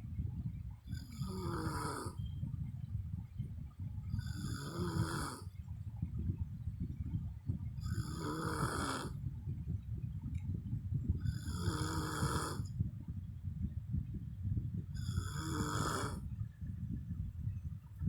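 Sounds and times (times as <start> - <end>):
woman snoring: 0.9 - 2.2, 4.2 - 5.4, 7.8 - 9.2, 11.3 - 12.6, 15.0 - 16.2.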